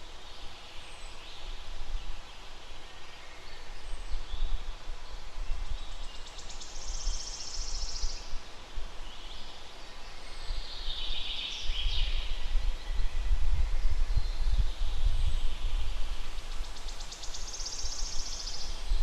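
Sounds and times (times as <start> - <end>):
songbirds singing: 0.0 - 19.0
wind buffeting microphone: 11.6 - 17.1, 18.0 - 19.0.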